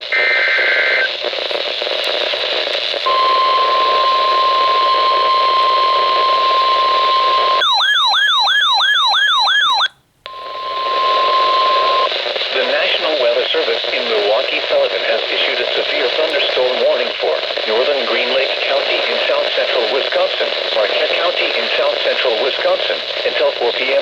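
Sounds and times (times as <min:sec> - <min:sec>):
radio hiss: 0:00.0 - 0:07.6, 0:10.3 - 0:24.0
steady warning alarm tone: 0:03.1 - 0:12.1
warbling electronic siren: 0:03.2 - 0:09.9.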